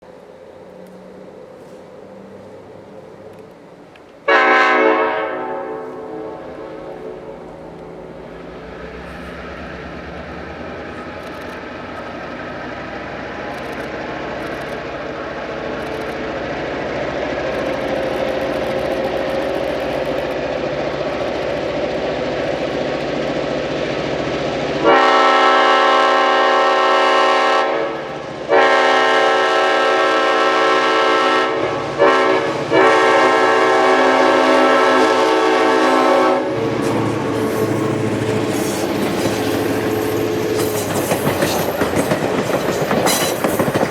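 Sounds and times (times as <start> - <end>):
diesel locomotive engine rumble: 0.0 - 43.9
locomotive air horn: 4.2 - 7.4, 24.8 - 36.8
train wheels clicking over rail joints: 10.5 - 24.7, 36.6 - 43.9.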